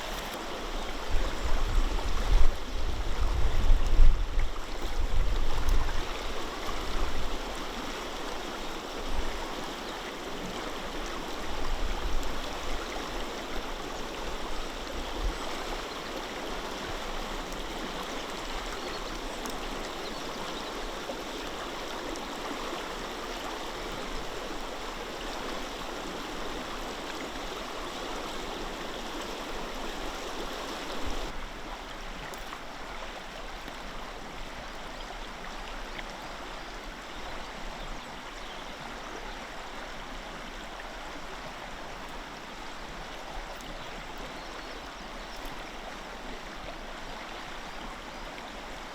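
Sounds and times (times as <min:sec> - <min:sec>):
river water rushing over rocks: 0:04.3 - 0:34.4.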